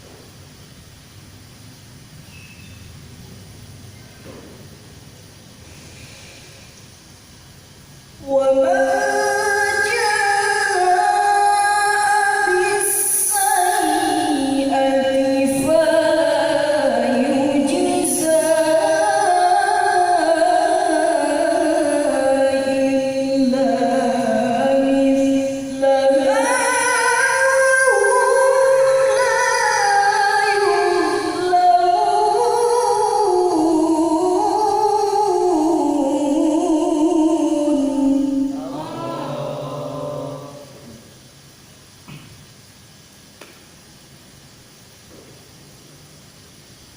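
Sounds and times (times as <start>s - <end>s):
woman reciting melodically: 8.2s - 41.0s.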